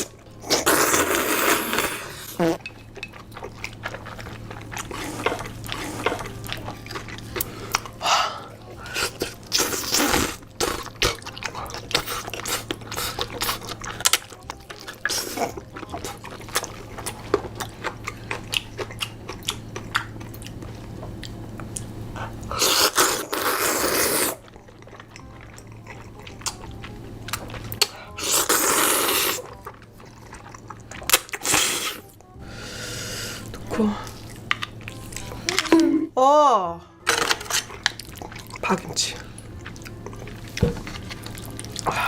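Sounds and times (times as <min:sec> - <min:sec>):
person chewing crunchy food: 0:00.0 - 0:35.9, 0:37.0 - 0:42.0.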